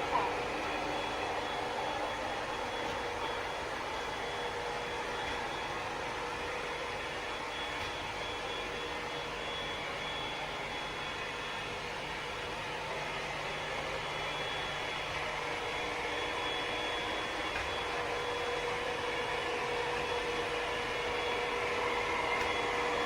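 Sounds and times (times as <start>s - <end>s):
robot vacuum whirring: 14.1s - 23.0s.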